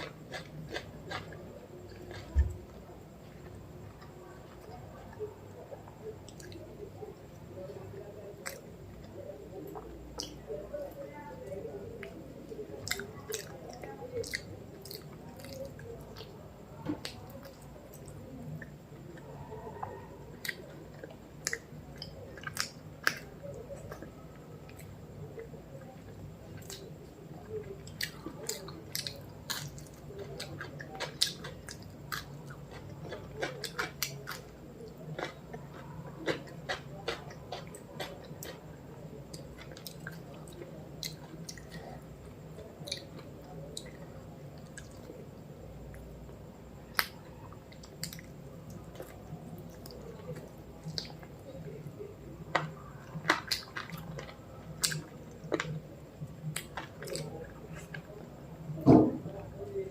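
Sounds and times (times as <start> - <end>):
person chewing and eating: 0.0 - 5.0, 12.8 - 16.3, 17.0 - 45.1, 46.9 - 58.1
mouth clicks and smacks: 46.9 - 51.5.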